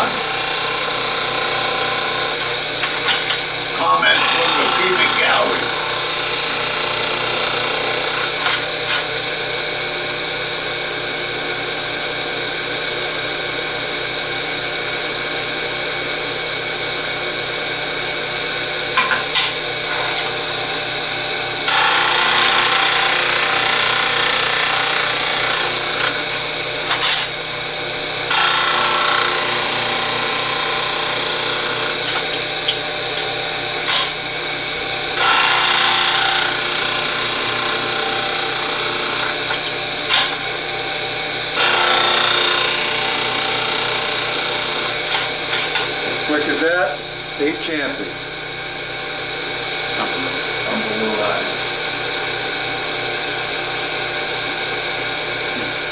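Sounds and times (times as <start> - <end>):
disc sander running: 0.0 - 55.9
sharp knocks of metal parts: 2.8 - 3.4, 26.9 - 27.3, 33.9 - 34.2
metal grinding on sanding disc: 3.8 - 6.1.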